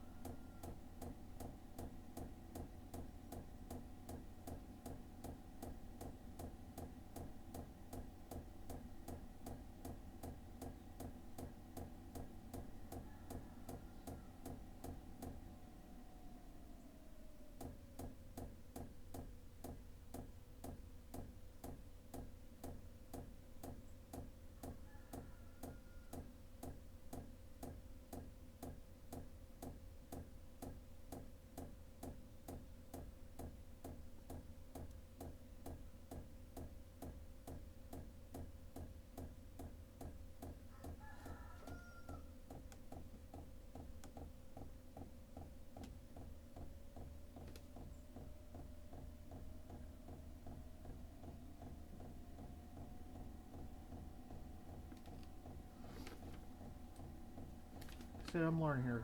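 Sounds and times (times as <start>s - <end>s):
fuel pump ticking: 42.5s - 59.0s
fan whine: 45.2s - 59.0s.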